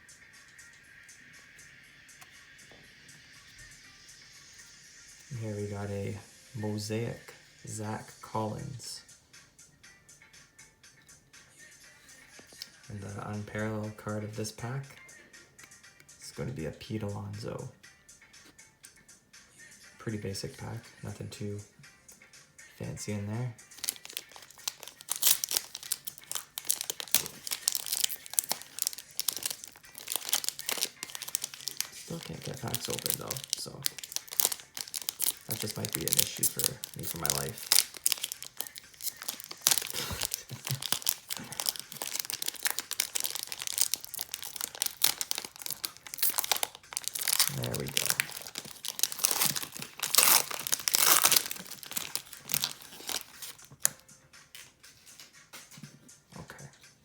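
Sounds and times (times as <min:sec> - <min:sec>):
plastic wrapper crinkling and tearing: 0:23.7 - 0:53.9.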